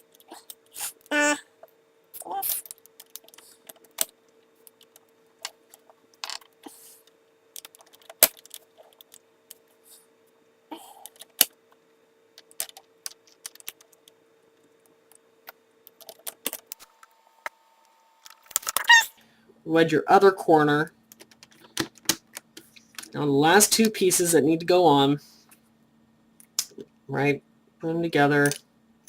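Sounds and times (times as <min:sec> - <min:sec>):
faint steady hum: 0:00.0 - 0:29.0
plastic puzzle pieces clicking: 0:21.1 - 0:23.1.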